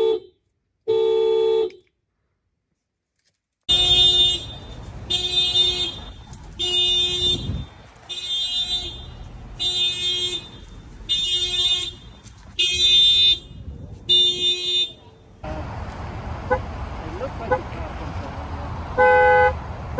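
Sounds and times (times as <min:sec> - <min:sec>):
car horn honks: 0:03.7 - 0:15.8, 0:16.4 - 0:17.9, 0:18.9 - 0:19.7.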